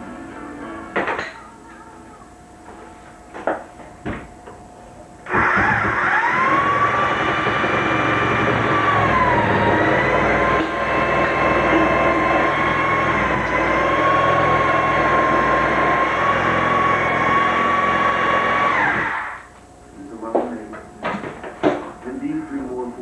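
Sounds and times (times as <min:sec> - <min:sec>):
machine motor whining: 0:05.2 - 0:19.6.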